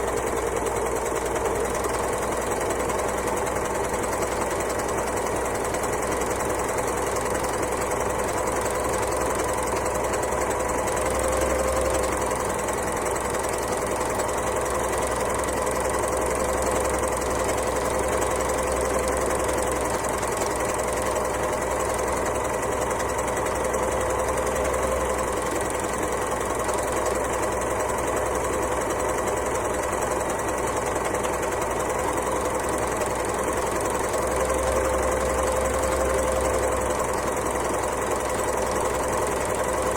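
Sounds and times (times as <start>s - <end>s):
sewing machine running: 0.0s - 39.9s.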